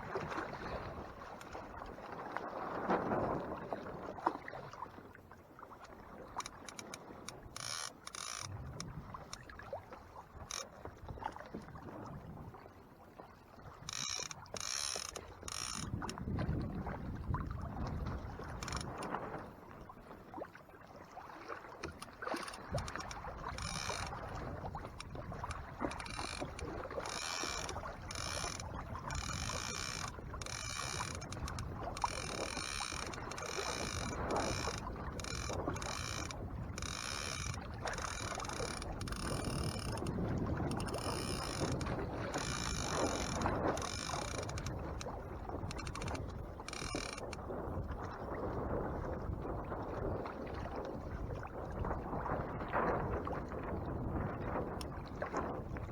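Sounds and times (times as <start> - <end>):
wind: 0.0 - 55.9
fishing reel ratchet clicking: 6.4 - 9.4, 10.4 - 10.7, 13.9 - 16.2, 18.5 - 19.1, 21.8 - 24.2, 24.9 - 40.1, 40.7 - 47.4
rushing water: 13.6 - 19.1, 21.1 - 47.4.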